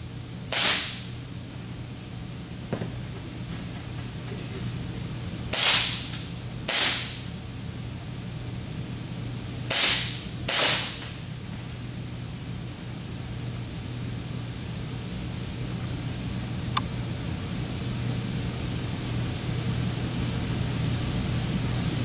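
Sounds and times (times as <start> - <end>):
airsoft pistol shots: 0.5 - 1.2, 5.5 - 7.3, 9.7 - 11.2.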